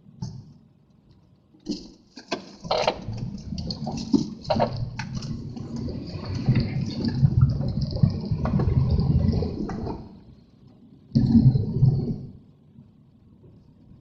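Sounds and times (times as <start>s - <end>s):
wind buffeting microphone: 3.0s - 10.3s.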